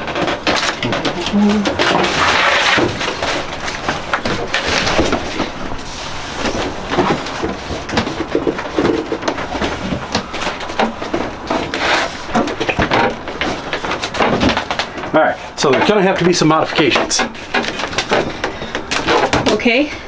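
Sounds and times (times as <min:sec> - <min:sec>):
knocks and scrapes: 0:00.0 - 0:19.8
rustling: 0:00.0 - 0:20.0.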